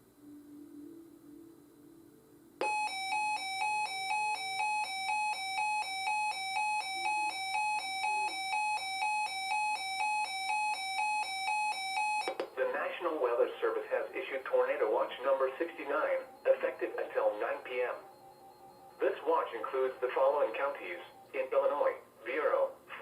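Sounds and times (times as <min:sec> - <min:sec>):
two-pitch electronic alarm tone: 0:02.6 - 0:21.4
broadcast voice: 0:12.4 - 0:18.1, 0:19.0 - 0:23.0.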